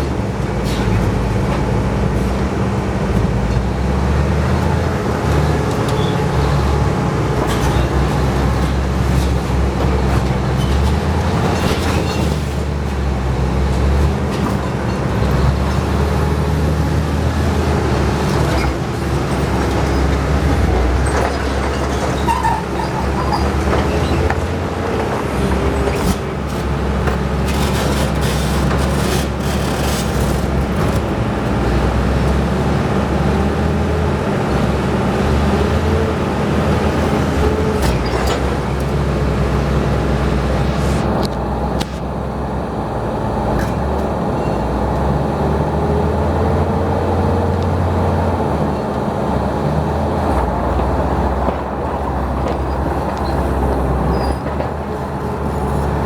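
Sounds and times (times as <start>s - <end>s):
heavy diesel engines under load: 0.0s - 56.0s.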